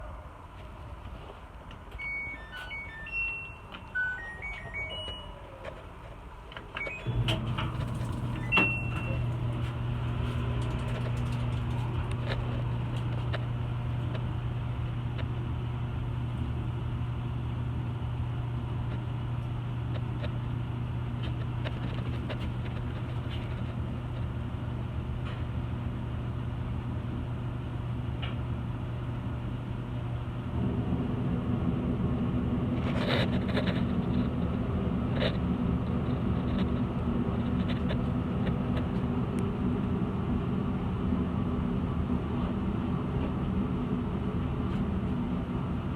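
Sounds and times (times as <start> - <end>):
short electronic beep: 2.0 - 5.6, 6.8 - 7.4, 8.4 - 9.2
laundry machine motor hum: 6.4 - 33.0.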